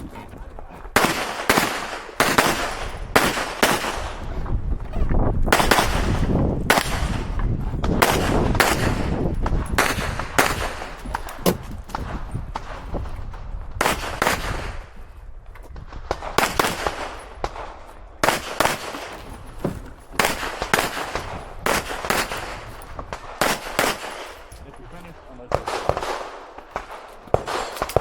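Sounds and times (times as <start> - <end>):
pistol shots in quick pairs: 0.9 - 4.4, 5.5 - 12.9, 13.8 - 14.9, 16.0 - 19.3, 20.2 - 24.6, 25.5 - 28.0.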